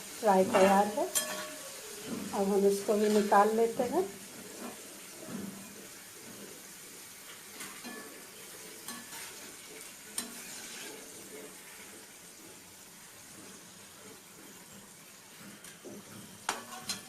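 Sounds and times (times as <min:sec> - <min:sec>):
potatoes sizzling in hot oil: 0:00.0 - 0:17.0
spoon tapping and scraping pan: 0:00.4 - 0:02.3, 0:07.5 - 0:08.2, 0:08.8 - 0:10.9, 0:15.6 - 0:17.0.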